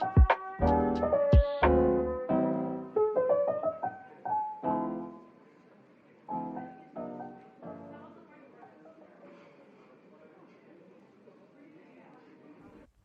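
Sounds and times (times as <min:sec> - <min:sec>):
piano music: 0:00.0 - 0:05.4, 0:06.3 - 0:08.2.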